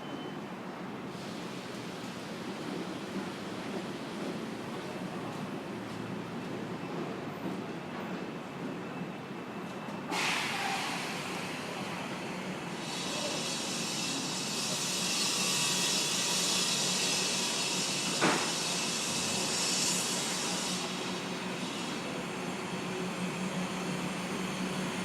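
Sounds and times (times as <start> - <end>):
city street traffic: 0.0 - 25.0
loud steady hiss: 10.1 - 25.0.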